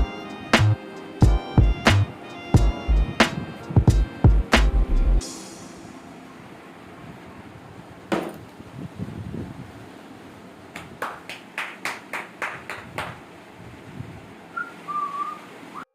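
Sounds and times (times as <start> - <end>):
short whistle: 14.6 - 15.9.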